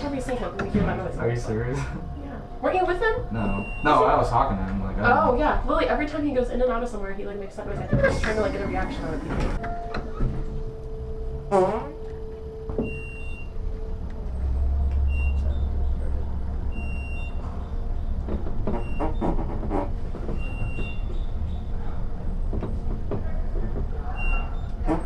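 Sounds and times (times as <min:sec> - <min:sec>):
elevator car rumbling: 0:00.0 - 0:25.0
short high beeps: 0:03.3 - 0:04.0.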